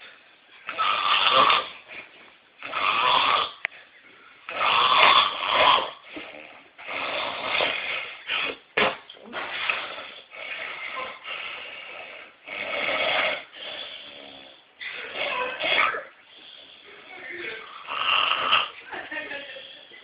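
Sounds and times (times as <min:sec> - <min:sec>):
man snoring loudly: 0:00.7 - 0:01.8, 0:02.6 - 0:03.6, 0:04.5 - 0:08.6, 0:09.6 - 0:15.9, 0:17.6 - 0:18.8
quiet breathing: 0:16.2 - 0:17.9, 0:19.2 - 0:20.0.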